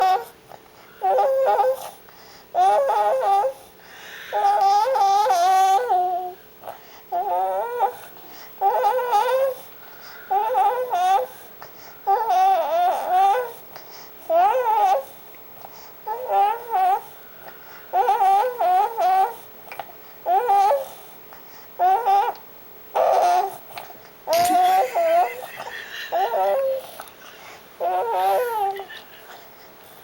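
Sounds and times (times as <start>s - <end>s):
baby moaning sing-song: 0.0s - 15.2s, 16.0s - 21.1s, 21.8s - 27.1s, 27.8s - 30.0s.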